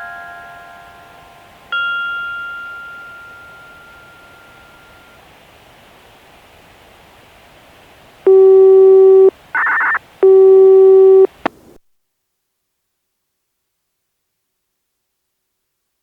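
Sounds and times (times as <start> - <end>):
steady control tone: 8.3 - 11.3
radio hiss: 9.1 - 10.0.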